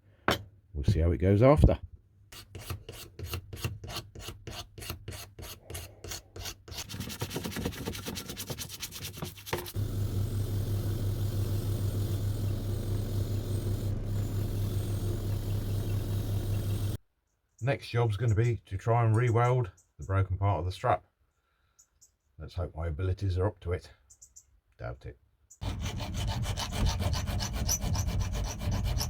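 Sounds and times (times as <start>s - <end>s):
sandpaper rubbing on wood: 2.4s - 9.8s, 25.6s - 29.0s
power tool low hum: 9.8s - 17.0s.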